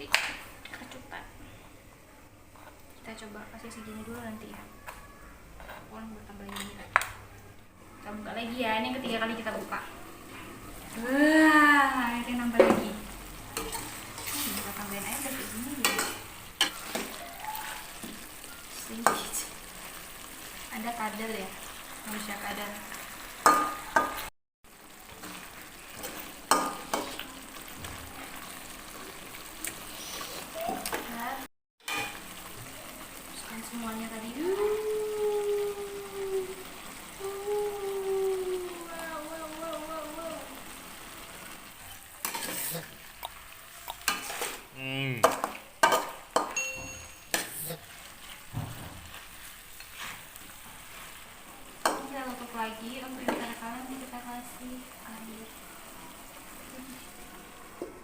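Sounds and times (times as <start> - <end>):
food sizzling in a pan: 0.0 - 58.0
utensil scraping a pan: 13.6 - 18.0, 41.9 - 43.0, 44.0 - 44.7, 47.3 - 51.3.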